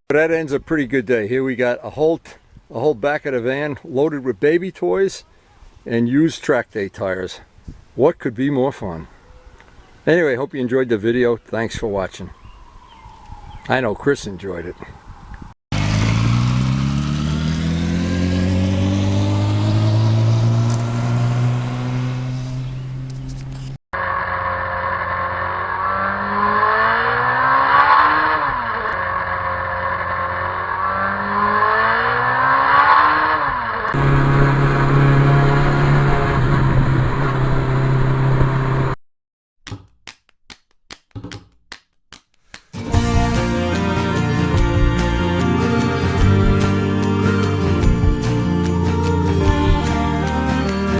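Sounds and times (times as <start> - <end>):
car engine accelerating: 15.7 - 39.0.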